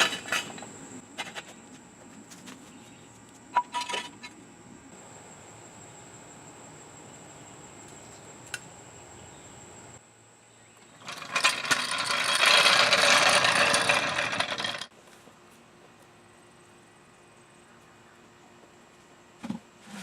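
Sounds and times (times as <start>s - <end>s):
rapid mechanical rattle: 11.0s - 14.9s.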